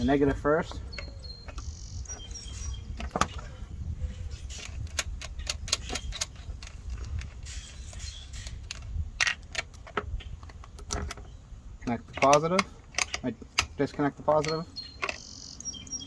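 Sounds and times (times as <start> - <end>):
metallic clicks of hand tool: 4.6 - 11.2, 12.1 - 15.3.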